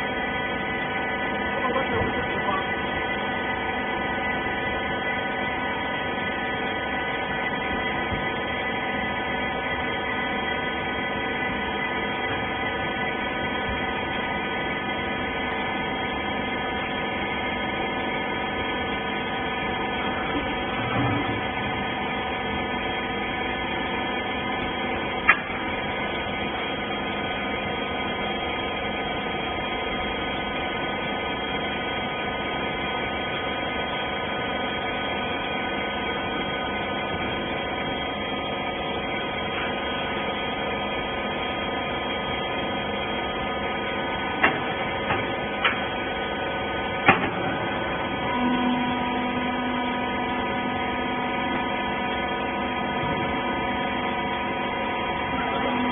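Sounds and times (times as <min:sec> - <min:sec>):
baler machine humming: 0:00.0 - 0:55.9
higher machine tone: 0:47.4 - 0:55.9.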